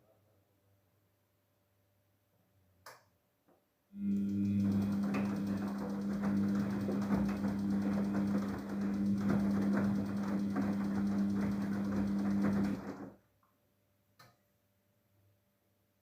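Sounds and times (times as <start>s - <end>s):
washing machine motor hum: 4.0s - 13.2s.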